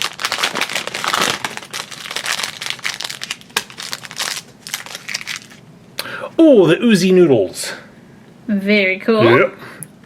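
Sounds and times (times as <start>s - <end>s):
plastic foil crinkling and tearing: 0.0s - 5.6s.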